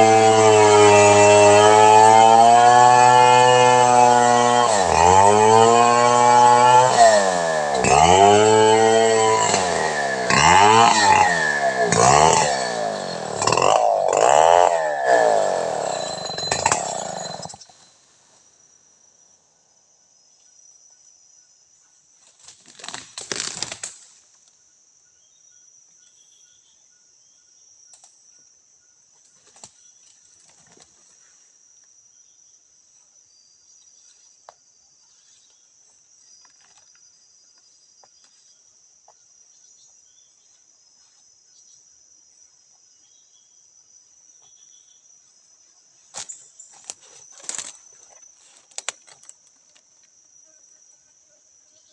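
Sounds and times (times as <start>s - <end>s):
chainsaw running: 0.0s - 17.7s, 46.9s - 47.9s
insects chirring: 9.0s - 51.9s.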